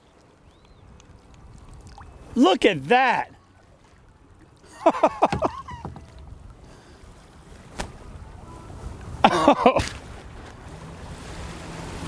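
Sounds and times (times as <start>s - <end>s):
water around kayak: 0.0s - 12.0s
man exclaiming: 2.4s - 3.3s
wind on microphone: 5.3s - 12.0s.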